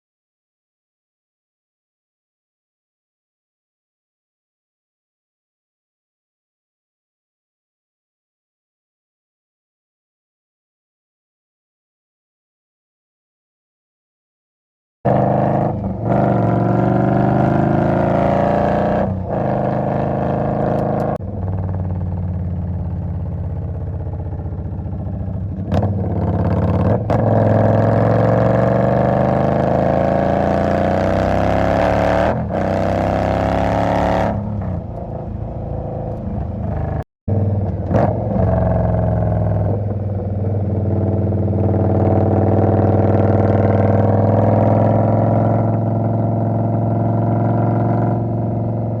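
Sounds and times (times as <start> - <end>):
motorcycle engine running: 15.1 - 49.0.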